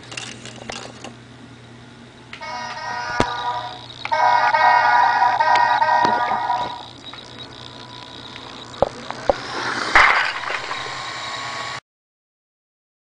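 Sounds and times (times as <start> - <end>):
electronic tune: 2.4 - 9.9
plastic bricks clattering: 9.9 - 10.9.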